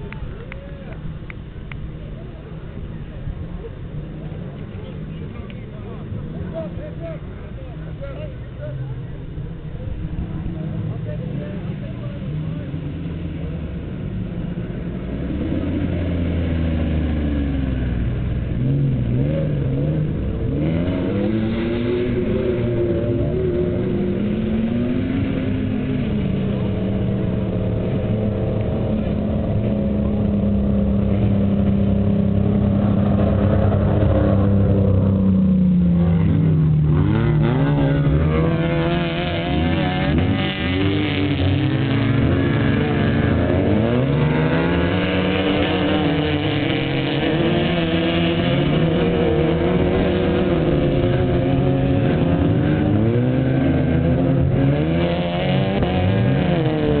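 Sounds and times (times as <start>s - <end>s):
truck engines revving: 0.0s - 57.0s.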